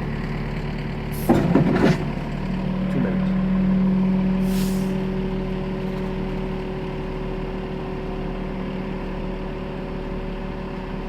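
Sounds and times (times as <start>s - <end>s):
truck engine running: 0.0s - 11.0s
brief hiss: 4.4s - 5.0s.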